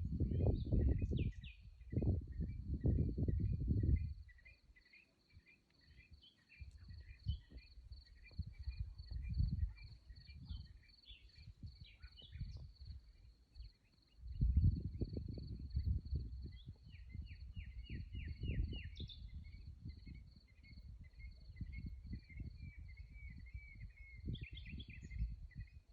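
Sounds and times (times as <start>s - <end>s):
low rumbling wind gusts: 0.0s - 4.4s, 6.6s - 25.9s
high-pitched cricket trill: 5.9s - 24.8s.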